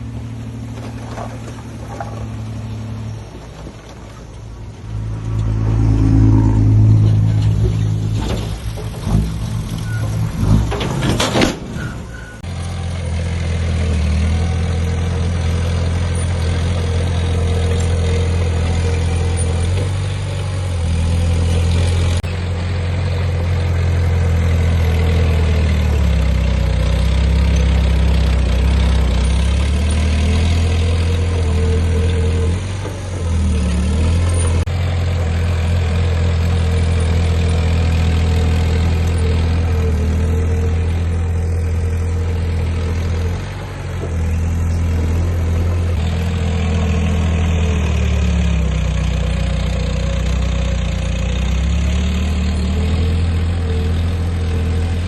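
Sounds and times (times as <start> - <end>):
heavy diesel engine droning: 0.0 - 55.0.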